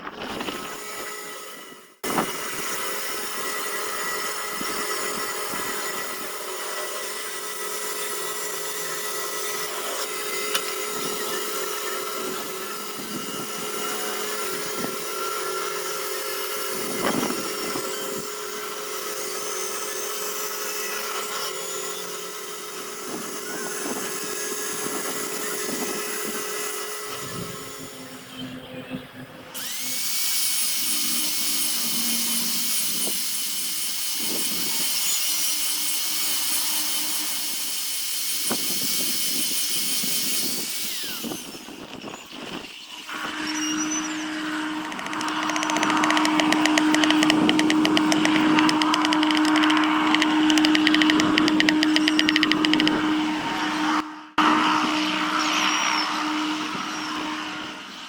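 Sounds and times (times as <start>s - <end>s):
tool spinning up with whine: 0.0s - 28.3s, 29.6s - 57.6s
power tool working wood: 29.6s - 41.9s, 43.1s - 53.2s.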